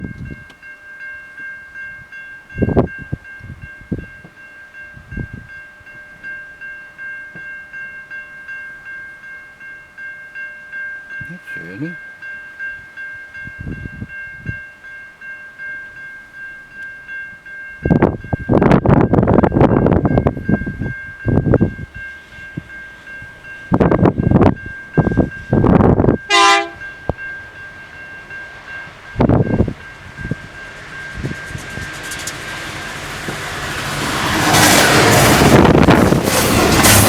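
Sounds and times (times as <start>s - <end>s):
level crossing warning bell: 0.0s - 36.8s
train rushing past: 17.8s - 37.0s.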